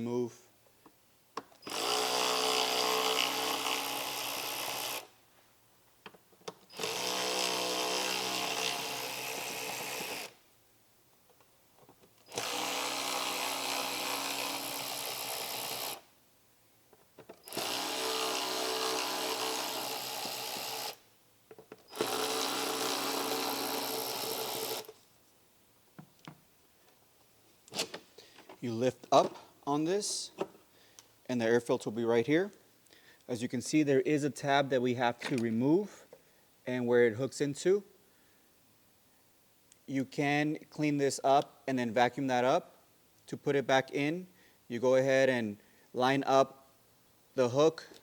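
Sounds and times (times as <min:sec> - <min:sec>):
cordless drill motor whine: 0:01.7 - 0:05.0, 0:06.8 - 0:10.4, 0:12.3 - 0:16.0, 0:17.5 - 0:21.0, 0:21.9 - 0:24.9.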